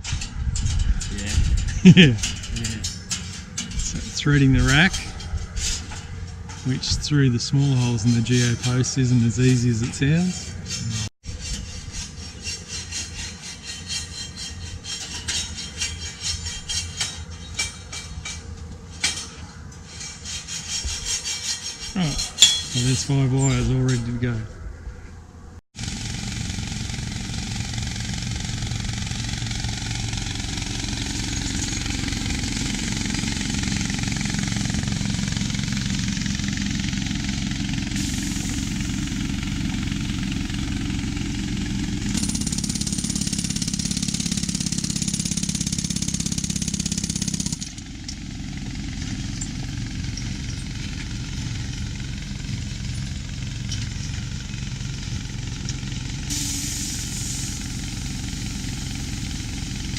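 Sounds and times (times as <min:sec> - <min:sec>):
vehicle engine running: 0:25.8 - 0:59.9.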